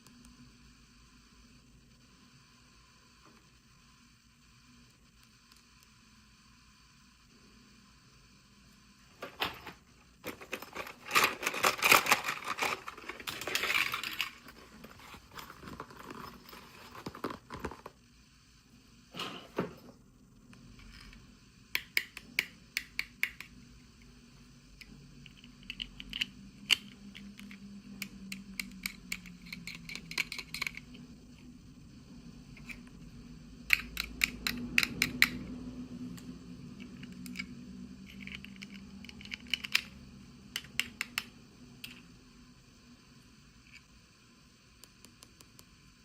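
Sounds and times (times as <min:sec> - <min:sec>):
plastic parts clicking and tapping: 0:09.2 - 0:14.5, 0:25.3 - 0:31.0, 0:33.7 - 0:35.4, 0:38.1 - 0:42.0.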